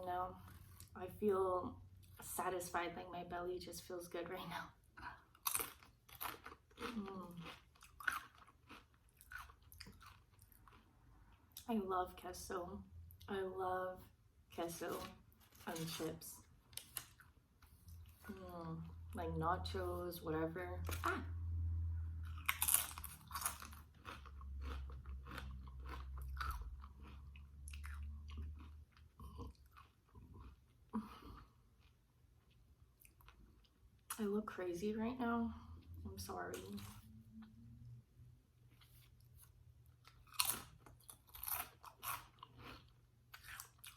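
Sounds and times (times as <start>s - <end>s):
chewing: 5.3s - 11.7s, 22.2s - 34.2s, 38.7s - 43.9s
tortilla chips crunching: 5.4s - 11.3s, 22.3s - 31.1s, 38.7s - 43.9s.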